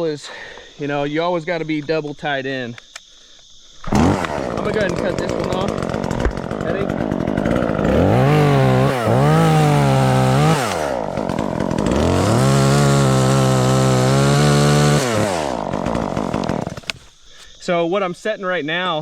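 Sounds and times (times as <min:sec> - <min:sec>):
chainsaw revving: 0:03.8 - 0:17.0.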